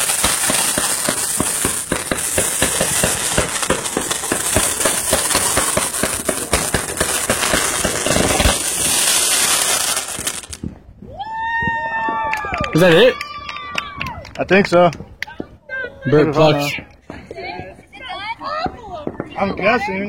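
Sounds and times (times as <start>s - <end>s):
firework hissing: 0.0s - 10.6s
rapid crackling pops: 0.0s - 10.7s.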